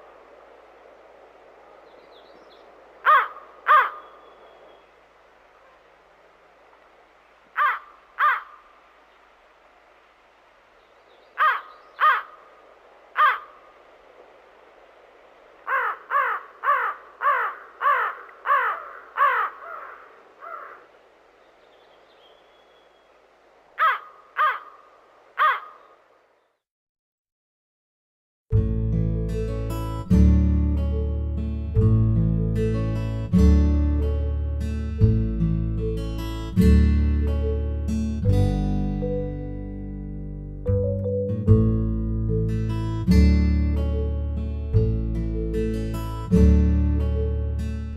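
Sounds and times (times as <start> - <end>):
faint steady hiss: 0.0 - 26.6, 42.0 - 47.9
crow cawing: 3.0 - 4.4, 7.5 - 8.7, 11.4 - 13.7, 15.6 - 21.0, 23.8 - 26.1.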